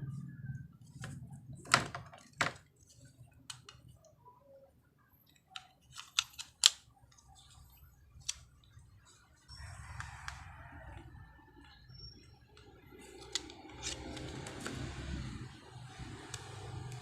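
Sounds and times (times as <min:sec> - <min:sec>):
plastic parts clicking and tapping: 0:01.0 - 0:04.1, 0:05.2 - 0:07.6, 0:08.2 - 0:08.7, 0:12.5 - 0:15.3.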